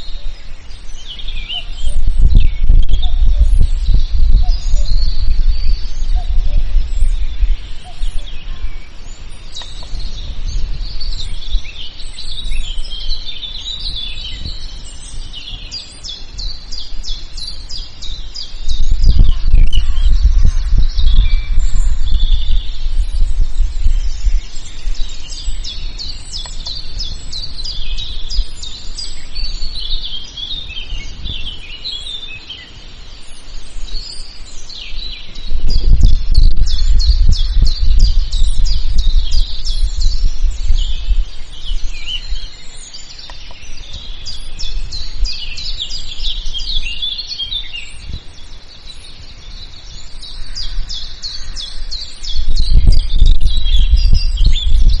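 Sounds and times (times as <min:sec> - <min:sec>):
low rumble: 0:00.0 - 0:29.9, 0:35.2 - 0:46.8
songbirds chirping and trilling: 0:00.0 - 0:55.0.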